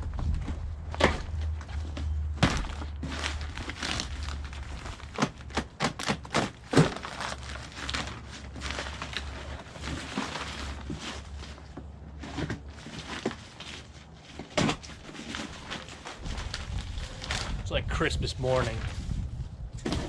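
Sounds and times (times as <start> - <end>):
packaging crinkling and tearing: 2.4 - 17.6.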